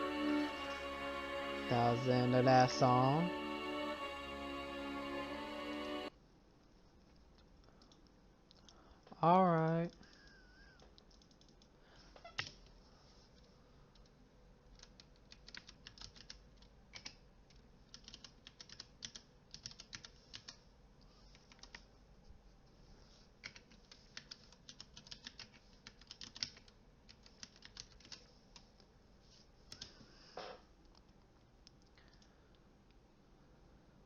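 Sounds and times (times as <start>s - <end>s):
typing on computer keyboard: 11.0s - 11.7s, 14.7s - 17.2s, 17.9s - 20.6s, 21.4s - 21.8s, 23.4s - 28.7s.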